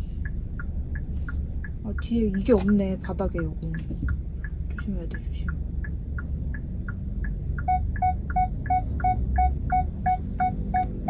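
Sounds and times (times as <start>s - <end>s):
engine and cabin rumble: 0.0s - 11.0s
parking sensor beeping: 7.6s - 11.0s.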